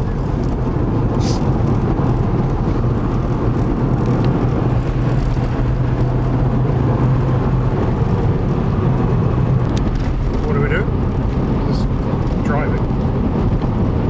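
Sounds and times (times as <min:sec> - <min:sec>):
car engine drone: 0:00.0 - 0:14.0
tyre and road noise: 0:00.0 - 0:14.0.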